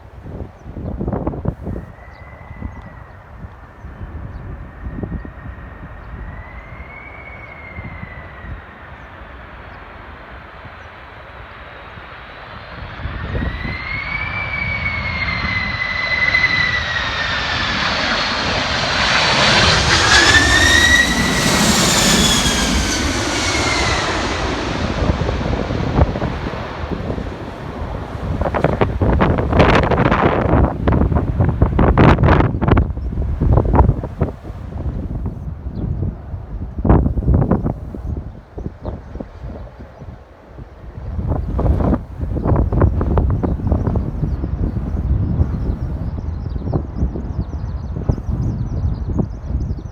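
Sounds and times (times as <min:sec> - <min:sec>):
wind buffeting microphone: 0:00.0 - 0:09.1, 0:12.7 - 0:49.9
jet airliner passing: 0:01.6 - 0:49.9.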